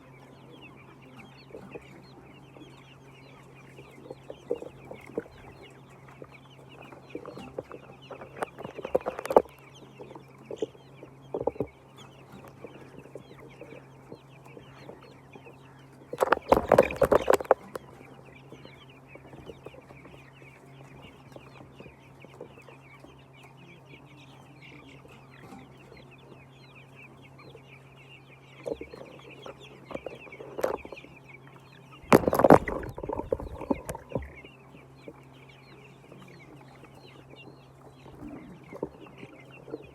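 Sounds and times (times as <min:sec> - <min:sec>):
chickens clucking: 0:00.0 - 0:39.9
chicken commotion burst: 0:16.2 - 0:17.8, 0:32.1 - 0:34.2.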